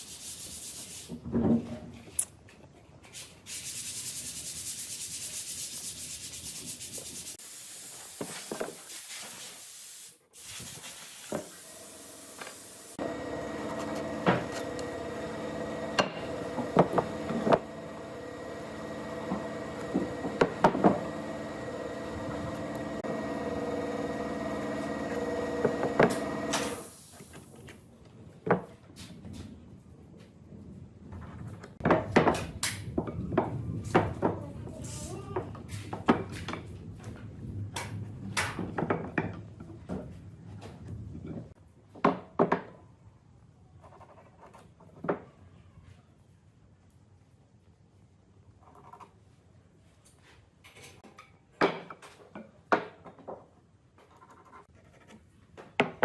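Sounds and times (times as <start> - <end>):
wood sanding: 0.0 - 1.1, 10.5 - 26.8.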